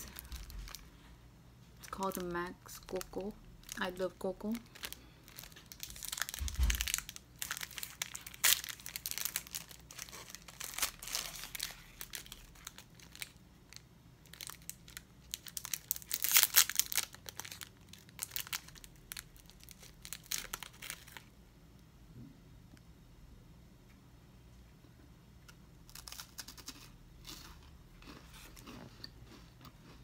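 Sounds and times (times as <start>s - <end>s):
plastic wrapper crinkling and tearing: 0.0s - 1.0s, 1.8s - 21.3s, 25.9s - 27.4s.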